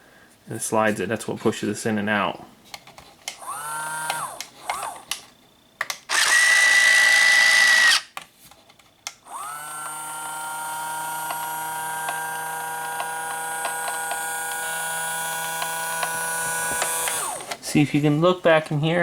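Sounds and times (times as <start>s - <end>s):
small electric motors whining: 3.4s - 5.2s, 6.1s - 8.1s, 9.2s - 17.6s.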